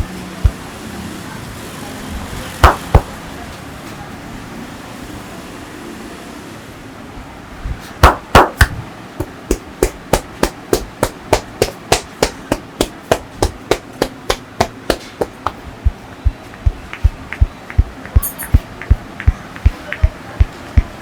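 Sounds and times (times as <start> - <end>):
hand slaps on body: 2.6 - 3.1, 9.5 - 15.6.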